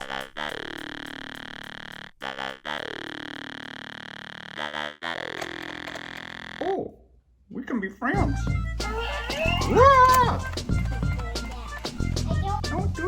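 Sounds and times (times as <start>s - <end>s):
pulsing synthesized tone: 0.0s - 6.6s.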